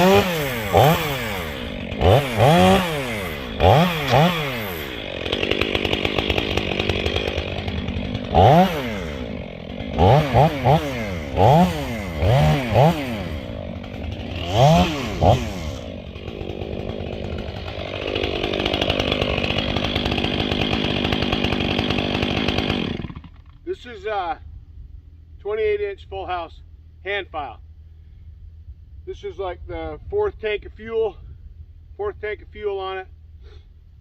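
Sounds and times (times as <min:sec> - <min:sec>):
chainsaw revving: 0:00.0 - 0:23.7.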